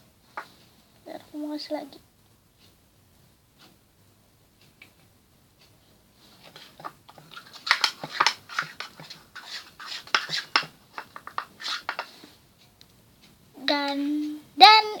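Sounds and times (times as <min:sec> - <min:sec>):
slime squelching in a bowl: 0:06.6 - 0:12.3.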